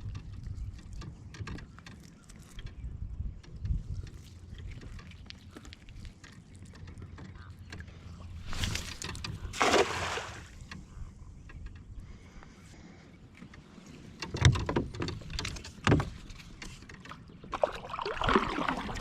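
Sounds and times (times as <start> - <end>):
kayak knocks and clicks: 0.0 - 11.9, 13.4 - 19.0
water splash: 8.5 - 10.6, 17.5 - 19.0
rush of water: 9.5 - 10.6.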